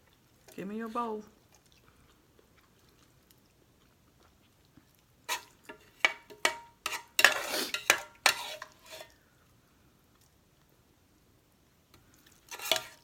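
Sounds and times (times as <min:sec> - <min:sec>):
utensil clinking and scraping dishes: 0:05.3 - 0:09.2, 0:12.5 - 0:13.0.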